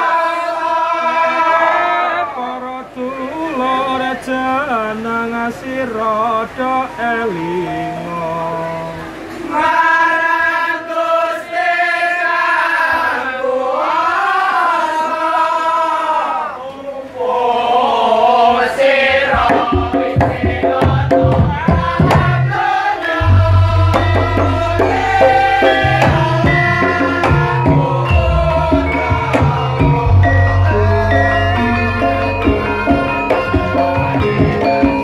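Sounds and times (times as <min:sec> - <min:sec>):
person singing long notes: 0:02.1 - 0:09.2, 0:23.2 - 0:35.0
drums and band playing: 0:19.2 - 0:35.0
heavy bass beat: 0:23.2 - 0:35.0.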